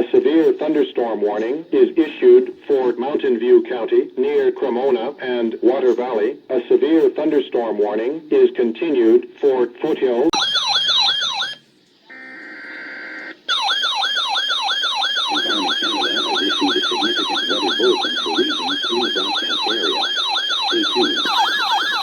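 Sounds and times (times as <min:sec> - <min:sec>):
electronic siren alarm: 0:10.3 - 0:22.0.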